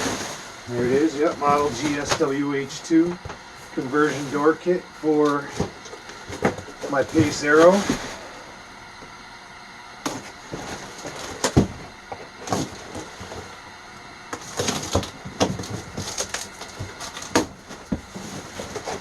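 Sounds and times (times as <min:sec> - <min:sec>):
packaging crinkling and snapping: 0:14.3 - 0:19.0.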